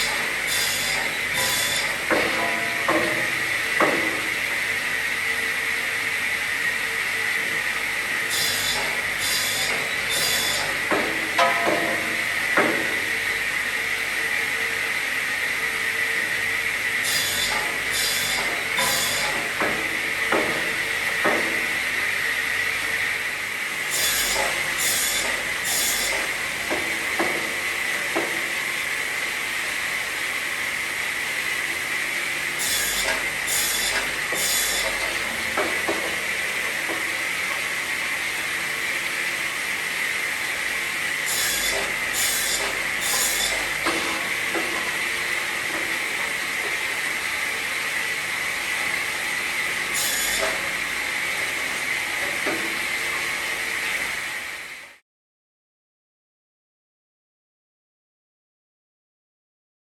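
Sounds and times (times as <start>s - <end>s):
saw hissing through timber: 0.0s - 2.0s, 8.2s - 10.8s, 17.0s - 19.4s, 23.8s - 26.5s, 32.5s - 35.0s, 40.6s - 44.3s, 49.9s - 51.0s.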